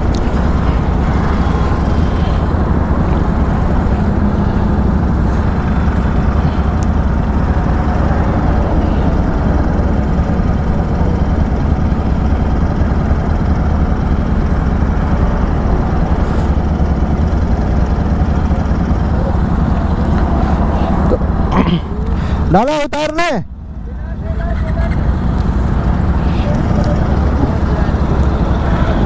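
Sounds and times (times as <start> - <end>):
motorcycle engine and road noise: 0.0 - 29.0.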